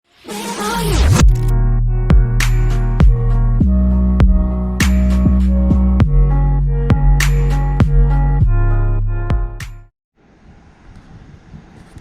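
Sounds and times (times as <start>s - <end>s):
deep bass note: 1.2s - 9.9s.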